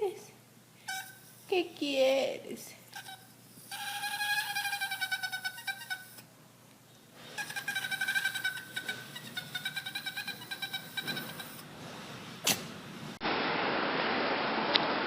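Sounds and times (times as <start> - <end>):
dog whining: 0.9 - 1.5, 2.9 - 6.3, 7.3 - 11.7.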